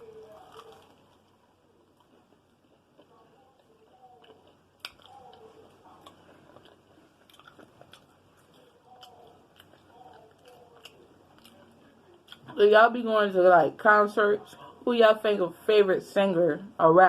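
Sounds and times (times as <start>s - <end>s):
chewing and biting food: 0.0s - 12.5s.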